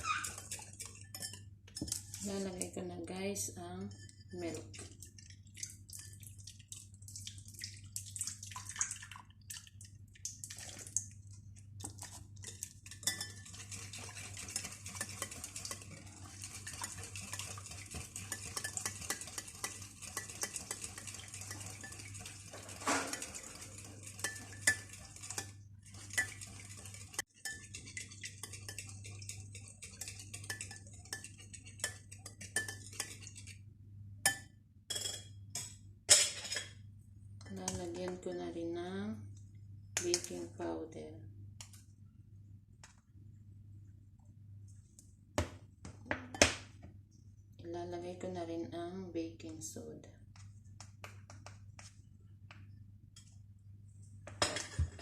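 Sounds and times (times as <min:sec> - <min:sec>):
utensil clinking on bowl: 0:00.0 - 0:02.7, 0:12.4 - 0:15.9, 0:16.6 - 0:33.5, 0:34.3 - 0:36.8
utensil scraping mixing bowl: 0:00.0 - 0:02.8, 0:11.8 - 0:33.6.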